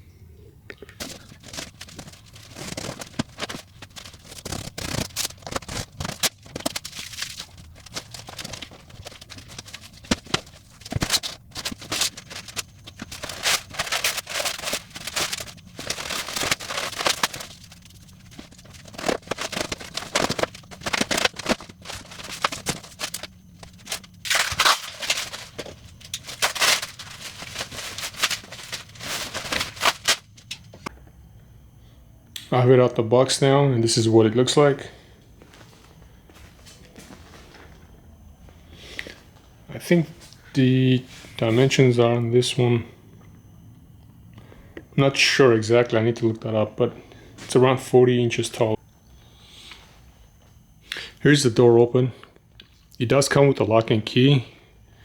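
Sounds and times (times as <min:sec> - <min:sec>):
cardboard and packing rustling: 0:01.0 - 0:30.9.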